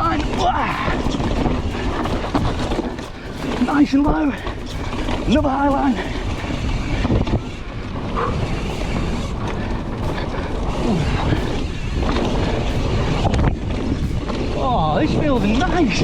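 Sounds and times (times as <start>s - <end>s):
bike knocking over bumps: 0.0s - 10.8s
bike tyres rolling on dirt: 0.0s - 16.0s
wind buffeting microphone: 0.0s - 16.0s.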